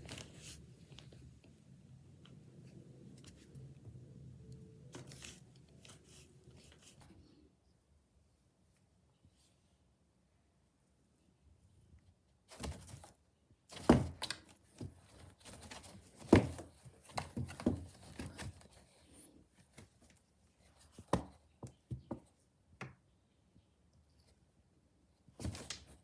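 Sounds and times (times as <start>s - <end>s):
rustling: 0.0s - 1.5s, 4.9s - 7.4s, 12.4s - 22.1s.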